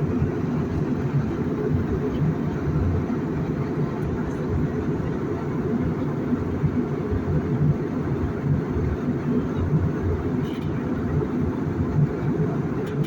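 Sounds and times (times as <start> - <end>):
airliner engines rumbling: 0.0 - 13.0.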